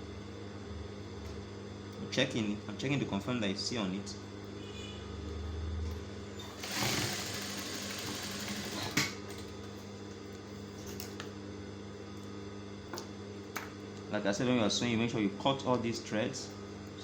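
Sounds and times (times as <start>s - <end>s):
sewing machine humming: 6.4s - 9.5s.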